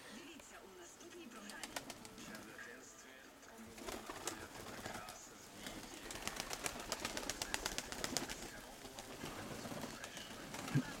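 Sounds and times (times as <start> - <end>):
pigeons cooing: 3.8 - 11.0.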